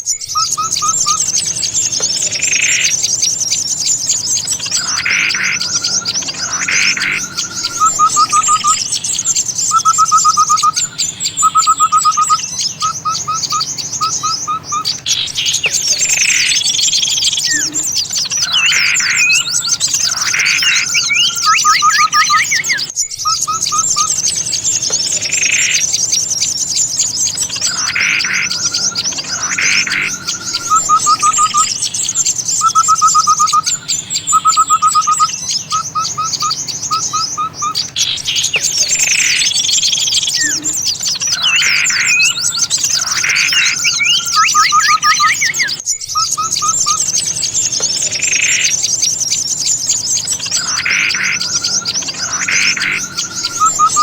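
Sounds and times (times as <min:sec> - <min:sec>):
rapid bird trills: 0:00.0 - 0:54.0
songbirds chirping: 0:00.0 - 0:54.0.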